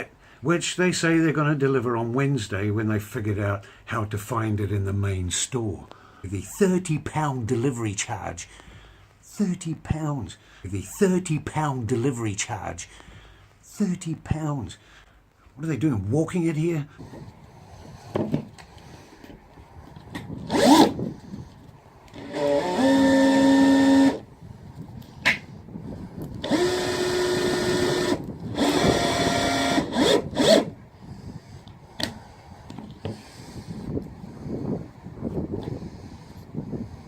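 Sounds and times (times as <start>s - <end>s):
power drill driving screws into wood: 20.5s - 21.0s, 22.1s - 24.2s, 26.4s - 30.8s.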